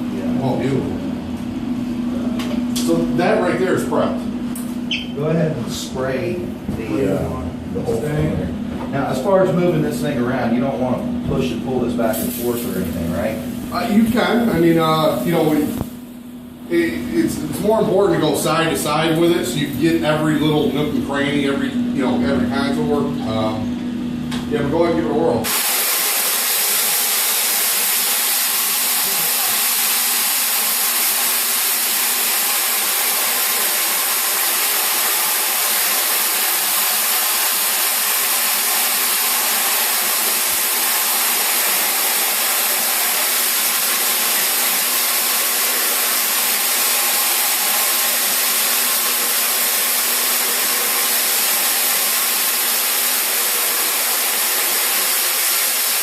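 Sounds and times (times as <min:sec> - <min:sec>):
floor grinder hissing: 0:11.9 - 0:15.9, 0:25.4 - 0:56.0.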